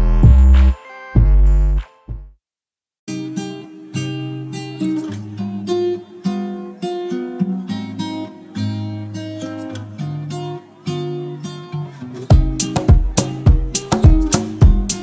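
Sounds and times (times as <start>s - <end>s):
plucked acoustic guitar: 3.1s - 15.0s
heavy drum beats: 12.3s - 15.0s.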